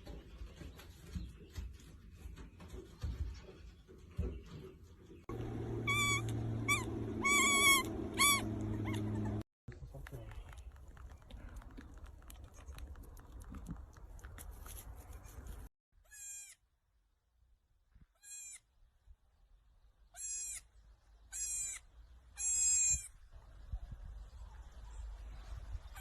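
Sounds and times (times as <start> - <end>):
baby goat bleating: 5.9 - 9.2, 16.1 - 16.6, 18.2 - 18.6, 20.2 - 20.6, 21.3 - 21.8, 22.4 - 23.1
rustling and clicking: 9.8 - 15.7.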